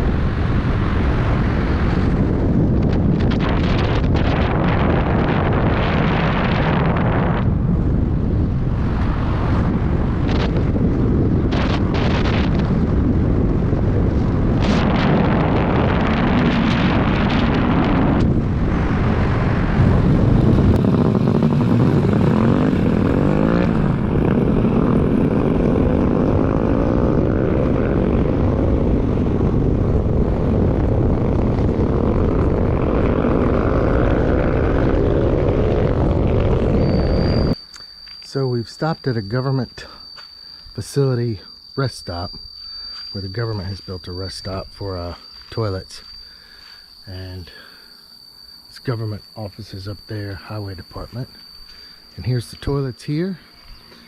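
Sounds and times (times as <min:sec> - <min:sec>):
car engine and road noise: 0:07.4 - 0:38.2.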